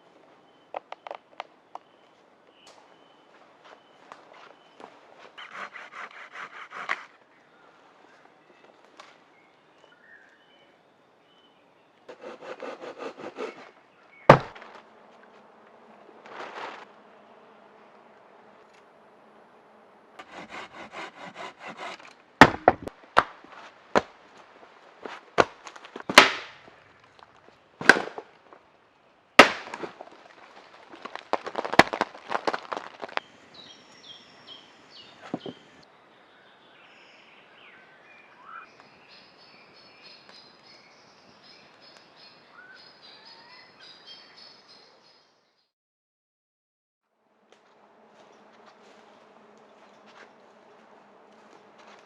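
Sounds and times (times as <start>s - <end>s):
birds chirping: 0.0s - 22.9s, 32.4s - 45.7s
wood cracking and snapping: 25.4s - 28.4s, 29.4s - 33.2s.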